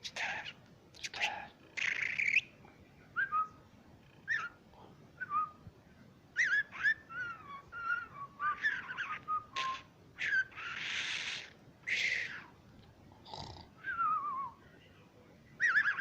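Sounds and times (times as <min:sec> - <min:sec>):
bird chirping and whistling: 0:01.8 - 0:02.5, 0:04.3 - 0:04.6, 0:06.4 - 0:12.5, 0:15.6 - 0:16.0.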